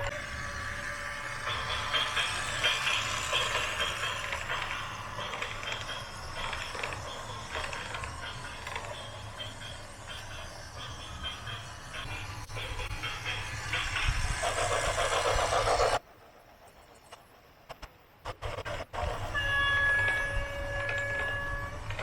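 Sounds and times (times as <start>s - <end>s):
heavy engine rumbling: 0.0s - 16.0s.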